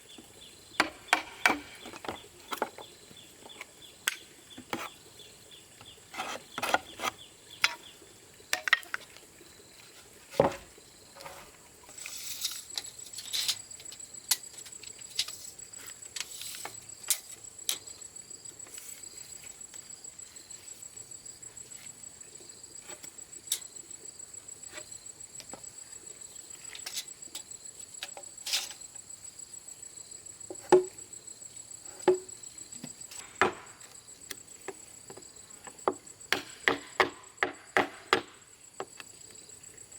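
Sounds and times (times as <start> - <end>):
bamboo knocks and taps: 0.8 - 2.8, 30.5 - 31.0, 32.0 - 33.8.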